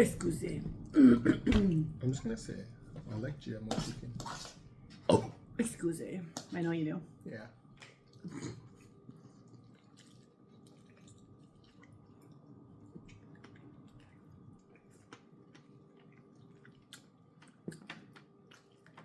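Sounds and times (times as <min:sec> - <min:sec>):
faint steady hum: 0:00.0 - 0:19.0
chewing mouth sounds: 0:07.8 - 0:19.0.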